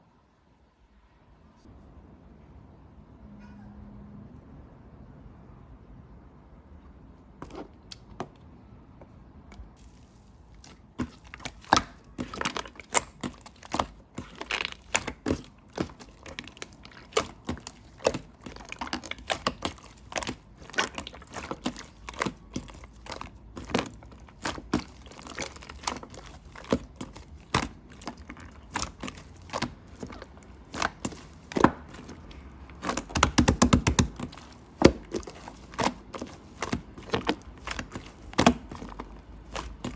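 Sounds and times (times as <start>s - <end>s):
slime squished by hand: 9.8s - 39.9s.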